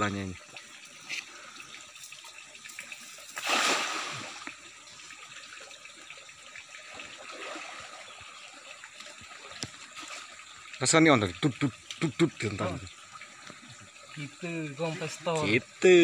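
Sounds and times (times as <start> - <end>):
river water trickling: 0.0 - 16.0
loud water splash: 3.4 - 4.4.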